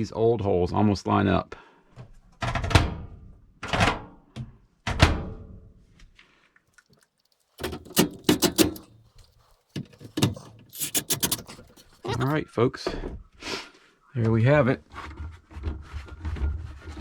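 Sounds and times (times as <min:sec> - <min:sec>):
sharp knocks and rattles: 0:07.6 - 0:12.2.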